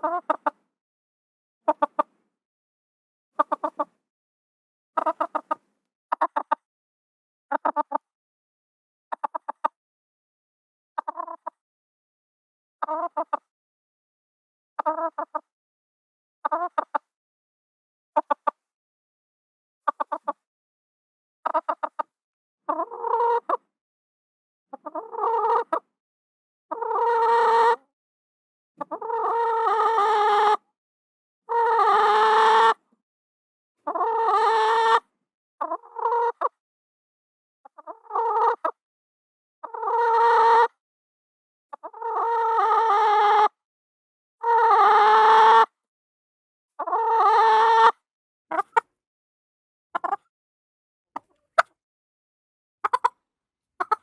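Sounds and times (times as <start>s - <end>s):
chicken calls: 0.0s - 0.6s, 5.0s - 6.6s, 22.7s - 23.6s, 24.8s - 25.8s, 26.7s - 27.8s, 28.8s - 30.6s, 31.5s - 32.8s, 33.8s - 36.5s, 37.7s - 38.7s, 39.6s - 40.8s, 41.7s - 43.6s, 44.4s - 45.7s, 46.8s - 48.9s, 50.0s - 50.2s, 52.8s - 53.2s, 53.8s - 54.0s.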